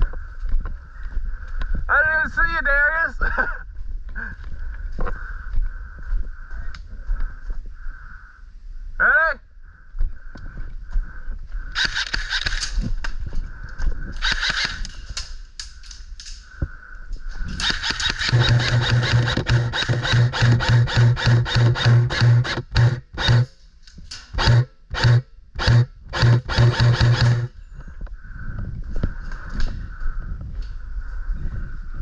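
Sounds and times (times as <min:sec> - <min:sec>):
airsoft guns firing: 0:11.8 - 0:12.8, 0:14.2 - 0:15.0, 0:17.6 - 0:23.5, 0:24.4 - 0:27.5
humming gearbox: 0:17.5 - 0:23.6, 0:24.3 - 0:27.6.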